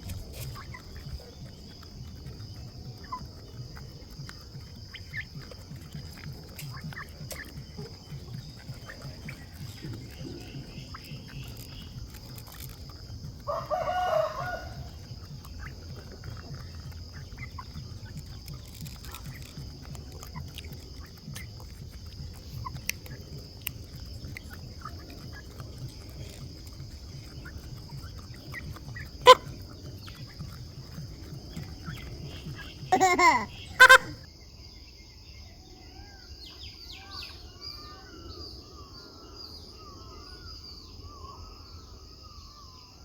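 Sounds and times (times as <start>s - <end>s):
chicken cry: 13.3s - 18.2s, 28.8s - 29.8s, 32.8s - 34.2s.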